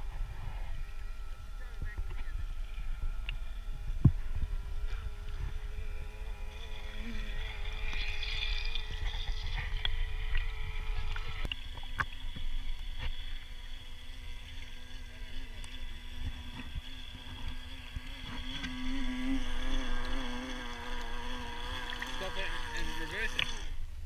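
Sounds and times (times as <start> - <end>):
wind rumbling on microphone: 0.0 - 13.2
faint steady hum: 0.0 - 24.0.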